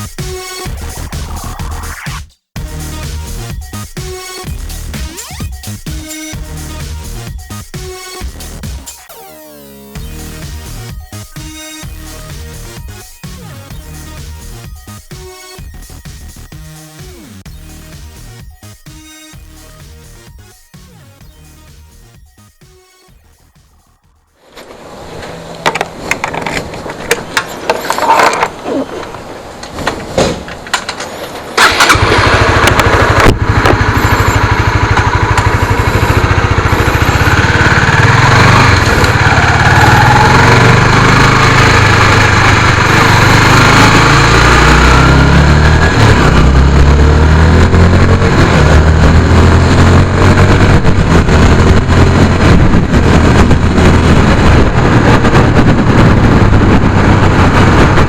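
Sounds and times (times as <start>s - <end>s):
motorcycle engine running: 31.5s - 58.0s.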